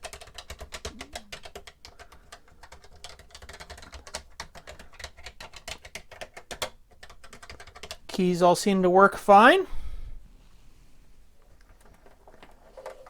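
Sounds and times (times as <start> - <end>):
plastic keyboard key clicks: 0.0 - 8.1.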